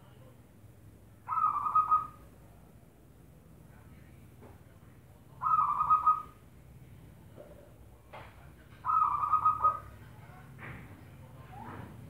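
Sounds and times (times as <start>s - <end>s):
dove cooing: 1.3s - 2.2s, 5.4s - 6.4s, 8.8s - 9.9s.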